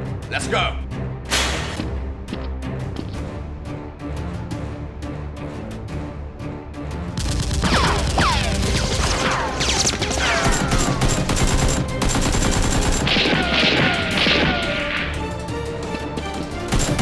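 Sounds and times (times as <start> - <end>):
rapid automatic gunfire: 7.2 - 9.0, 10.3 - 14.7, 16.7 - 17.0.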